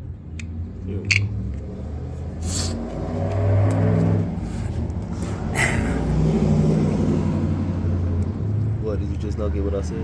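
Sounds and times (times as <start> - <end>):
short hisses: 2.4 - 2.8.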